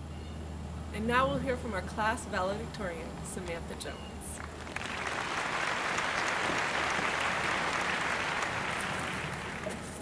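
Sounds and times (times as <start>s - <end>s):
audience applauding: 4.4s - 10.0s.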